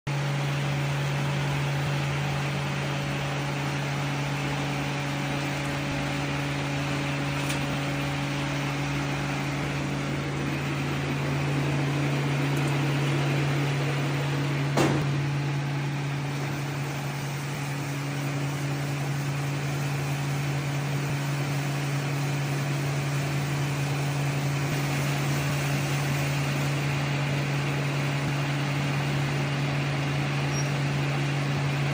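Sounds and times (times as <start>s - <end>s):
baling machine humming: 0.1s - 31.9s
sharp knock: 14.8s - 15.2s.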